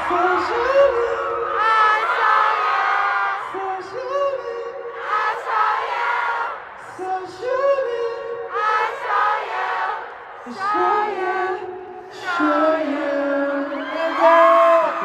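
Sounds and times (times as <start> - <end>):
person singing: 10.4 - 15.0.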